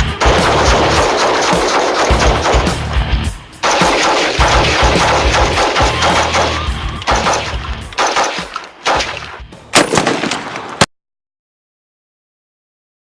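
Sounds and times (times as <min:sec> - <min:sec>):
rapid gunfire with echo: 0:00.1 - 0:02.9, 0:03.6 - 0:10.6.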